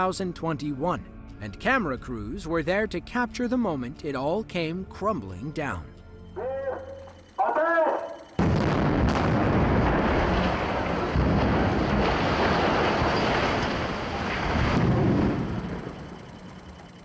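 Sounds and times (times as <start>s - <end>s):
silo collapsing rumble and crash: 8.4s - 16.2s.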